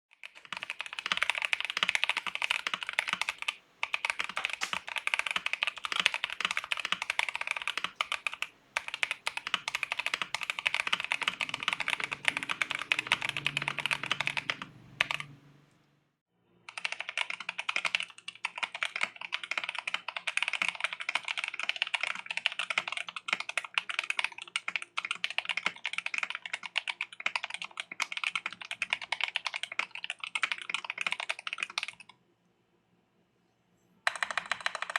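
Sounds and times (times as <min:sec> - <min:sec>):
typing on mechanical keyboard: 0:00.1 - 0:15.4, 0:16.7 - 0:32.2, 0:34.0 - 0:34.9.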